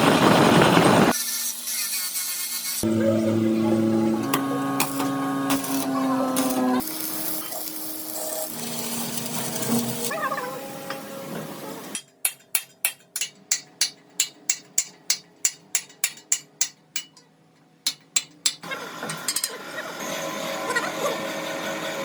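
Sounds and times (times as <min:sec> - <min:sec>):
workshop background sounds: 0:00.0 - 0:22.0
steady tones: 0:02.8 - 0:17.3
rapid hammer strikes on metal: 0:12.0 - 0:17.2, 0:17.8 - 0:18.7.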